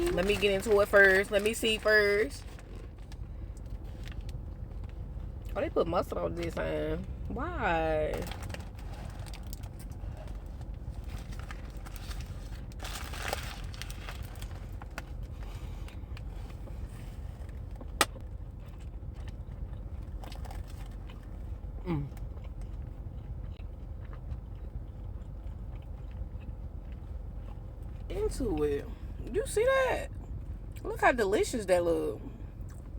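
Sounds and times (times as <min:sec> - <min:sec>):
wrapper rustling: 0:00.0 - 0:03.2, 0:08.1 - 0:15.3
steady low hum: 0:00.0 - 0:32.9
faint chewing: 0:14.4 - 0:28.1.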